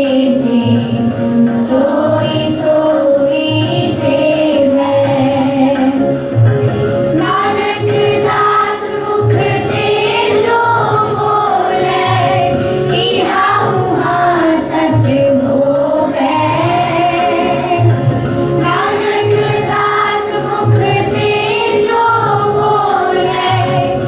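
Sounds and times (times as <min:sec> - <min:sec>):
children singing a hymn: 0:00.0 - 0:24.0
drum beat: 0:06.4 - 0:24.0.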